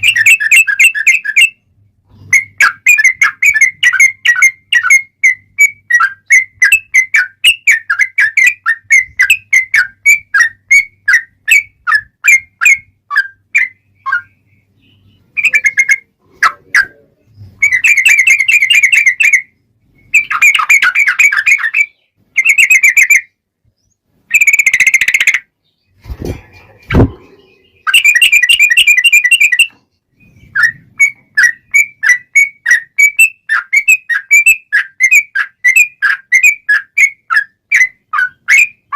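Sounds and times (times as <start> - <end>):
bird whistled notes: 27.0 - 38.8.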